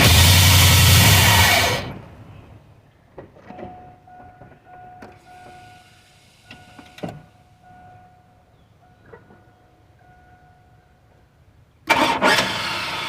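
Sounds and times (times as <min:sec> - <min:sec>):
faint electronic chime: 0:03.5 - 0:11.0.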